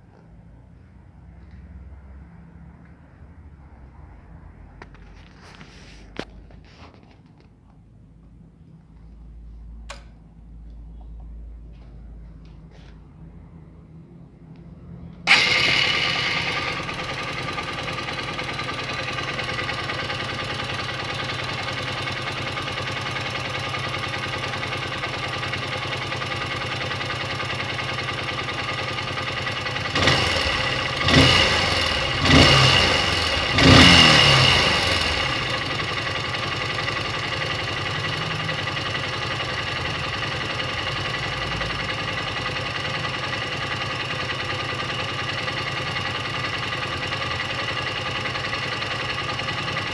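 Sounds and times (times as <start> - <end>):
motorcycle engine idling and revving: 13.8 - 49.9.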